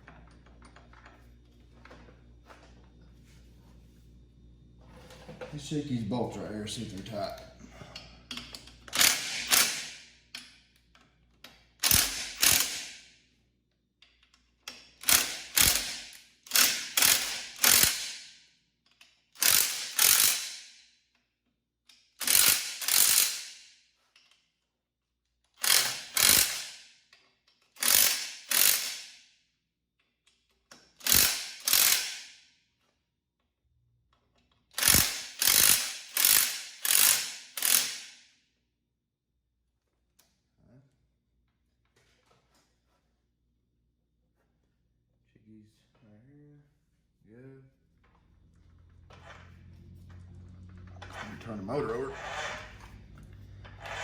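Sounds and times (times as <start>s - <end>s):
ratchet wrench clicking: 8.3s - 10.6s, 11.4s - 13.0s, 14.0s - 18.3s, 18.9s - 20.8s, 21.9s - 23.6s, 25.6s - 26.9s, 27.6s - 29.2s, 30.7s - 32.3s, 34.8s - 38.2s.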